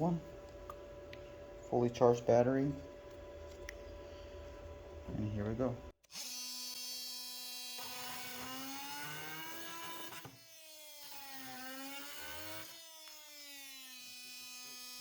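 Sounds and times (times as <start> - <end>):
multi-tool cutting wood: 6.0 - 15.0.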